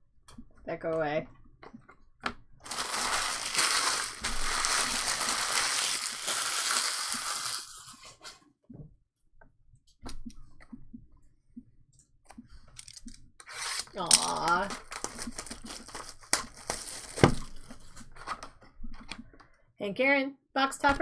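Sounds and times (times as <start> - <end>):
wrapper crinkling and tearing: 2.6 - 8.4, 12.8 - 18.0.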